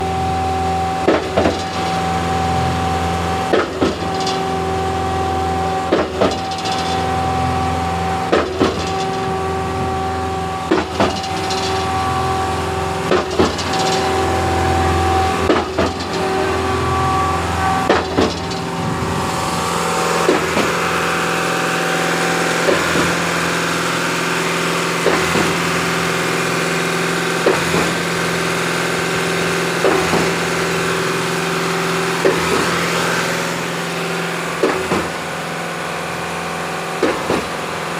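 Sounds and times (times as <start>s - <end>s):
concrete pump engine drone: 0.0s - 37.9s
pump knocking: 1.0s - 7.2s, 8.2s - 17.2s, 17.8s - 31.3s, 32.1s - 33.6s, 34.5s - 35.3s, 37.0s - 37.7s.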